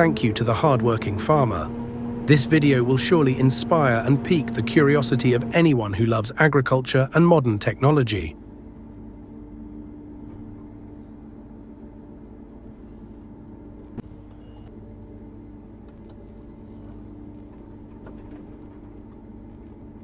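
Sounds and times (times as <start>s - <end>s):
combine harvester running: 0.0s - 9.2s.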